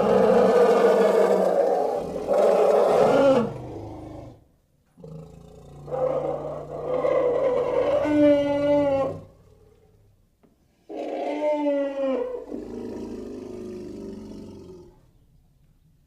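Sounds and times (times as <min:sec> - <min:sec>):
cartoon dragon roar: 0:00.0 - 0:04.4.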